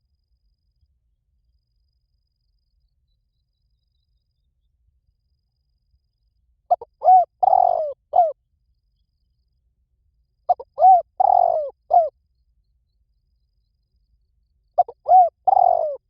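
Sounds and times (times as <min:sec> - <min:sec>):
dove cooing: 0:06.7 - 0:08.4, 0:10.5 - 0:12.1, 0:14.8 - 0:16.0.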